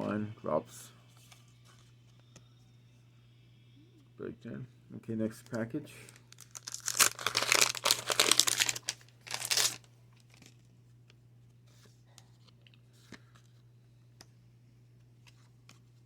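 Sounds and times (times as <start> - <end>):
wax paper wrapper tearing: 6.3 - 9.9.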